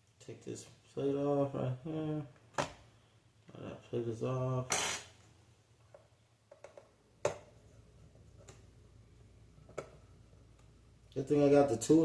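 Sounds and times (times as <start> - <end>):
clicks and taps of plastic parts: 5.9 - 7.5.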